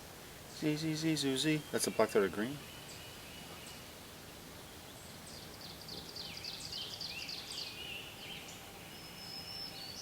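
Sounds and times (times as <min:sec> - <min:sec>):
bird singing high phrases: 0:00.5 - 0:03.9, 0:04.6 - 0:10.0.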